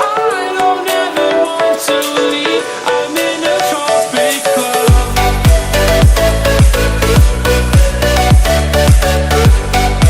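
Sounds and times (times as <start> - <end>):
electronic dance music: 0.0 - 10.0.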